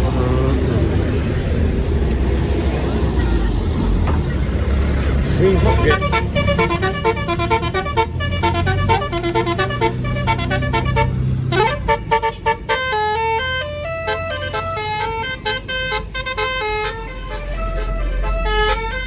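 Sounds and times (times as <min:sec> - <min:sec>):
bus engine running: 0:00.0 - 0:19.0
bus melody horn playing tune: 0:05.3 - 0:19.0.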